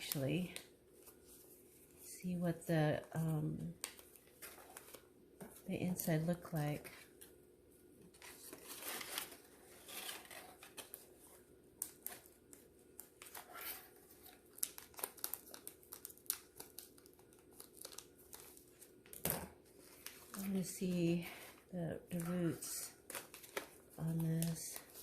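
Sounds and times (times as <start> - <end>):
wrapping crinkling and tearing: 8.1 - 25.0.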